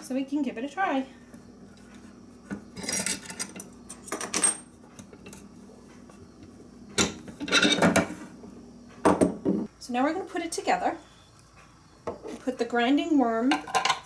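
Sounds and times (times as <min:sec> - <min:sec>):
grinder parts clinking and clattering: 0:02.8 - 0:04.7, 0:07.4 - 0:08.0, 0:13.5 - 0:14.0.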